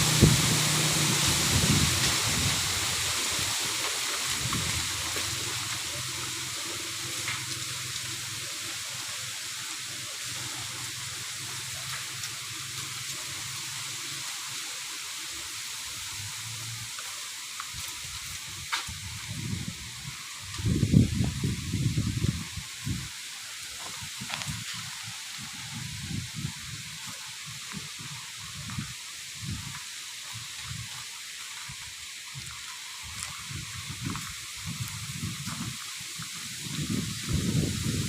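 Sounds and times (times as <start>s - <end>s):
wind gusts buffeting microphone: 0.0s - 5.3s, 18.5s - 23.1s, 23.9s - 29.8s, 32.4s - 38.0s
wind rustling bamboo leaves: 0.0s - 38.0s.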